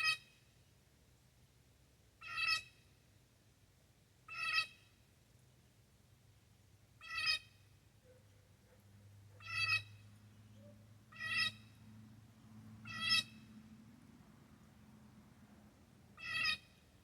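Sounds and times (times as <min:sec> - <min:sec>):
blue jay harsh jeer calls: 0:04.3 - 0:04.8, 0:07.0 - 0:07.5, 0:09.4 - 0:10.0, 0:11.1 - 0:11.8, 0:12.8 - 0:13.5, 0:16.2 - 0:16.8.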